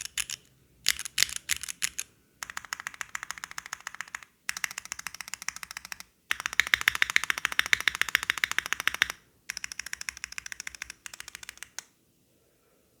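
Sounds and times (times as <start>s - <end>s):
fast typing on mechanical keyboard: 0.0s - 11.8s.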